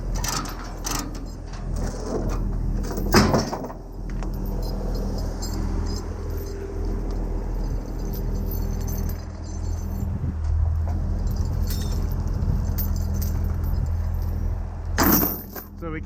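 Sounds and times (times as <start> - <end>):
light metallic clinks: 4.1 - 10.2, 11.1 - 14.4.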